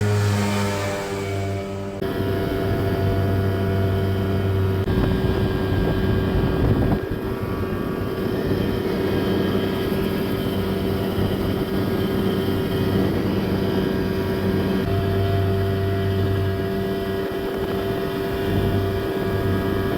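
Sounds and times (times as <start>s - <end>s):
rushing noise: 0.0s - 4.1s
boat engine running: 0.0s - 19.9s.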